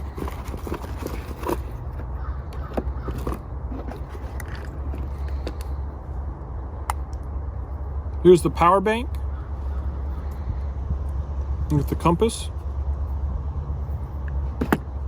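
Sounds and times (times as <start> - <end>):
packaging clicks and rustles: 0.0 - 5.8
steady low rumble: 0.0 - 15.0.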